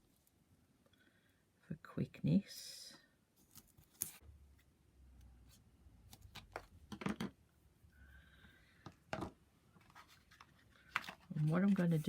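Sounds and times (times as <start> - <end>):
paper taps and rustles: 8.8 - 12.0.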